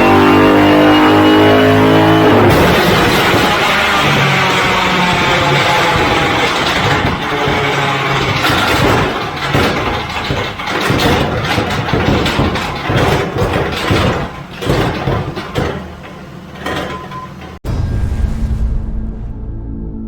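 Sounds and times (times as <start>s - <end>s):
car engine running unevenly: 0.0s - 17.6s.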